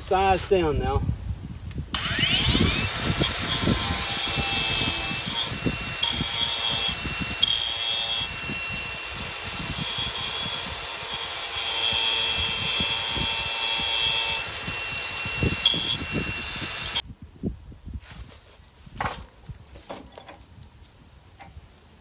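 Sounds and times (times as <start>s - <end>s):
power tool grinding whine: 1.9s - 17.0s.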